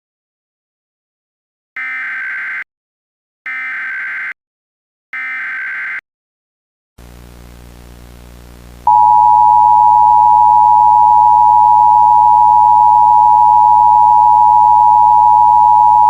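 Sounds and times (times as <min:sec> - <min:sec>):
two-tone alert signal: 0:08.9 - 0:16.0.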